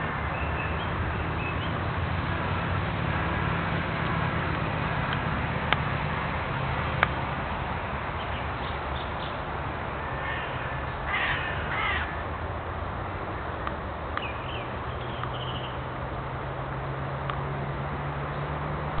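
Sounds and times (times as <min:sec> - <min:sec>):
crows cawing: 0:10.0 - 0:12.2.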